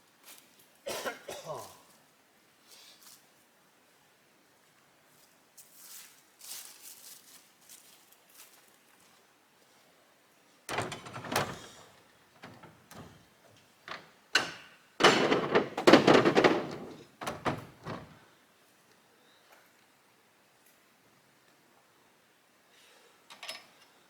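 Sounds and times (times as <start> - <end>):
knocks and thumps with clattering: 10.7 - 13.3, 13.9 - 18.2.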